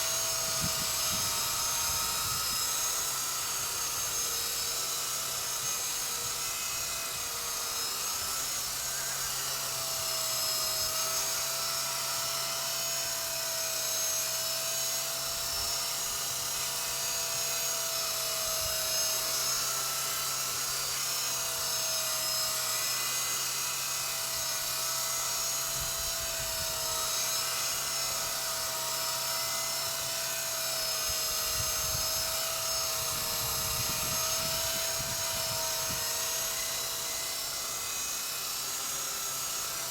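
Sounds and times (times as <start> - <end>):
toy helicopter rotor whine: 0.0 - 39.9
wind rumble on microphone: 0.2 - 2.9, 25.7 - 27.0, 31.0 - 36.6.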